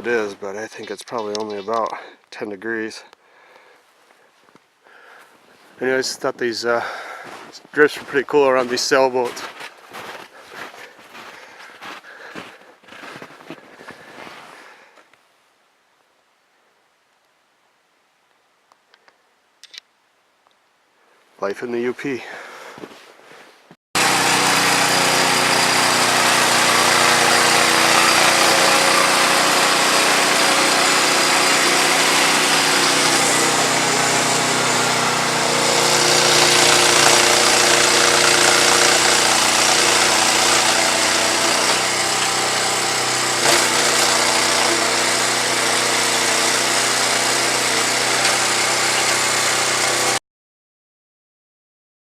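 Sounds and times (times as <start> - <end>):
engine running: 24.0 - 50.2.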